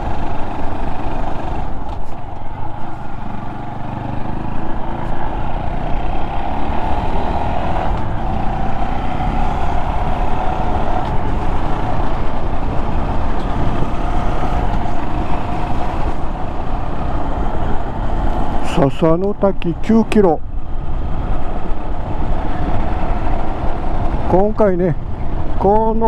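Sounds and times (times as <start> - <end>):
motorcycle engine running: 0.0 - 18.8
wind and road noise: 0.0 - 26.0.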